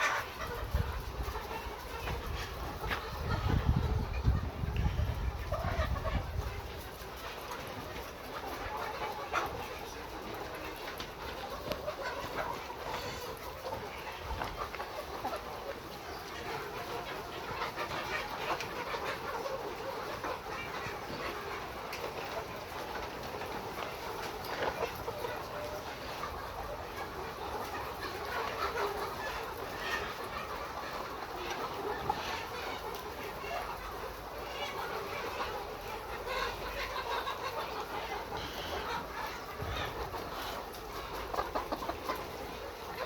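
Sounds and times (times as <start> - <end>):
hens clucking and calling: 0.0 - 43.0.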